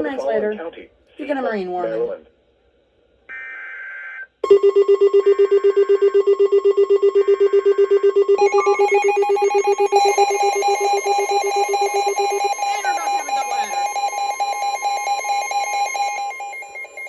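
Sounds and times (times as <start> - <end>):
electronic beep: 4.5 - 17.0
higher electronic tones: 8.4 - 17.0.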